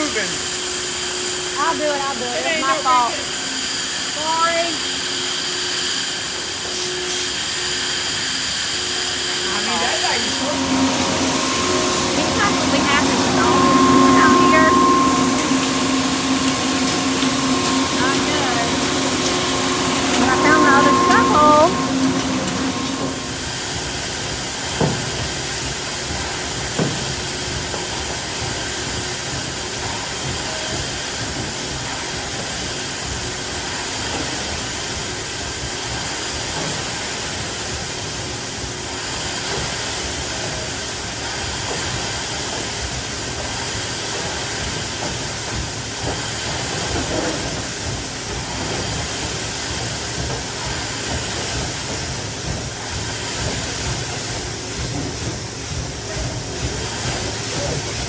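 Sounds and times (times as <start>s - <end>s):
constant hissing: 9.2s - 24.0s
farm vehicle engine running: 9.8s - 23.6s.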